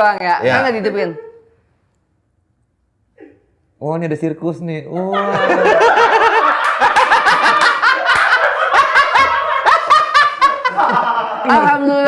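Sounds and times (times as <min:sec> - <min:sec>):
people laughing: 0:05.0 - 0:12.0.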